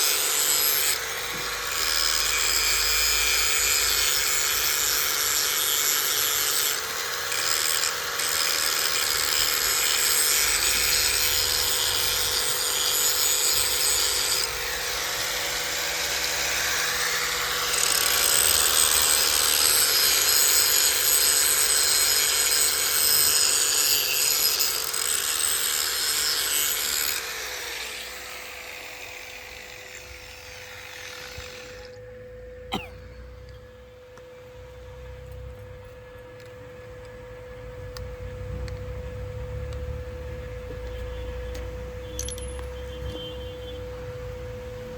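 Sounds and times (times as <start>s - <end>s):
power tool grinding: 0.0s - 34.3s
motor hum: 5.8s - 42.7s.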